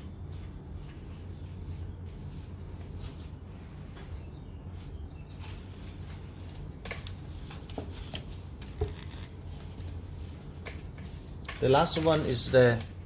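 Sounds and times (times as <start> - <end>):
steady low hum: 0.0 - 13.0
taps and clicks of handled packaging: 5.5 - 13.0.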